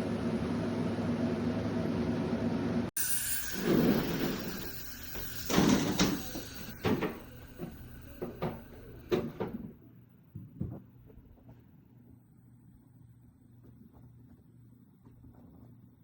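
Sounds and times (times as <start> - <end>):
torch gas hiss: 3.0 - 9.4.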